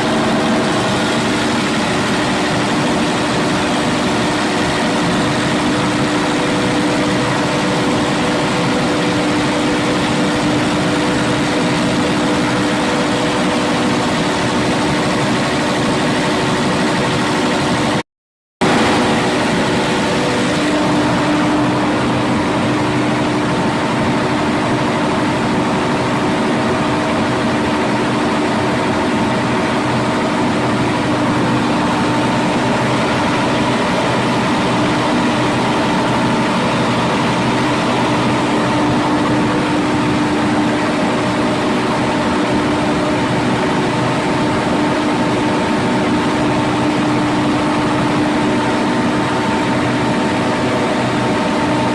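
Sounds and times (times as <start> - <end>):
diesel generator engine running: 0.0 - 18.0, 18.6 - 51.9
hum and whine: 18.6 - 51.9.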